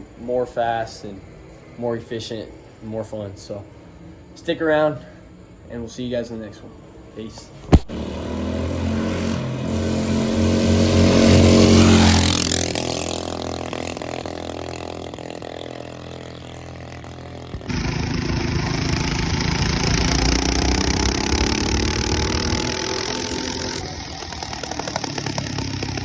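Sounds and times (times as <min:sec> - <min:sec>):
louder engine running steadily: 0:07.7 - 0:26.0
small engine revving: 0:07.8 - 0:26.0.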